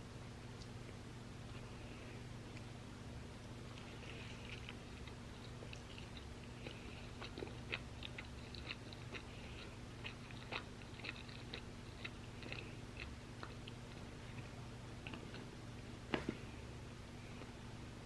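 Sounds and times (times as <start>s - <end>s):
faint low hum: 0.0s - 18.0s
chewing crispy fries: 3.4s - 15.6s.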